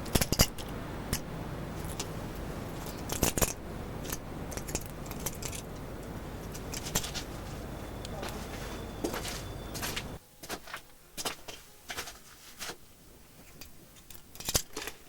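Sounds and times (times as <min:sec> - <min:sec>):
steady low hum: 0:00.0 - 0:10.4
hard objects clicking and clinking: 0:02.7 - 0:12.0, 0:13.6 - 0:15.0.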